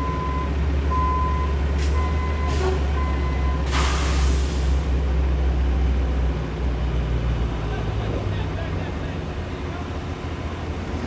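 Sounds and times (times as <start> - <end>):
reversing alarm beeping: 0.0 - 3.7
air brake hiss: 3.7 - 4.9.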